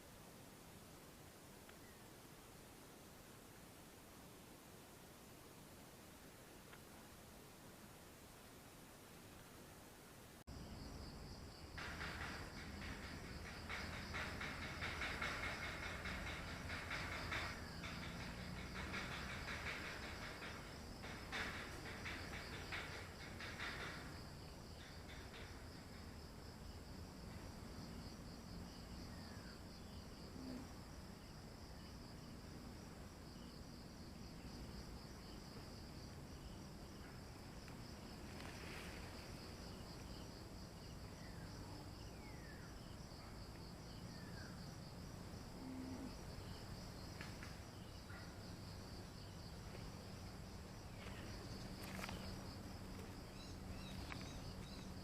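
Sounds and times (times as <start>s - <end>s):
faint clicks: 1.6s - 1.9s, 6.6s - 6.9s
insect trill: 10.5s - 55.0s.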